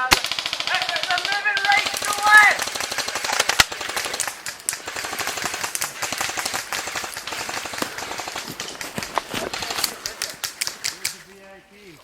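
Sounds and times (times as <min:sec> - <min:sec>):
airsoft guns firing automatic: 0:00.0 - 0:11.3.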